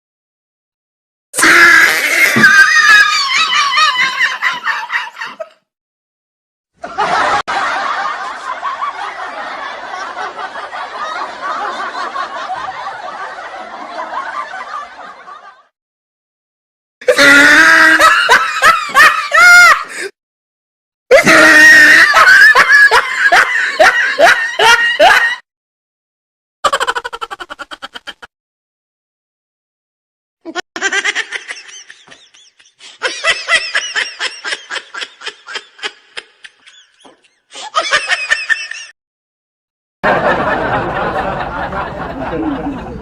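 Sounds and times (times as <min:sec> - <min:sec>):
people laughing: 0:01.6 - 0:05.6, 0:06.8 - 0:15.7, 0:17.0 - 0:20.1, 0:21.1 - 0:25.4, 0:26.7 - 0:28.3, 0:30.5 - 0:39.0, 0:40.0 - 0:43.0
high-pitched pulsing laughter: 0:26.6 - 0:28.3.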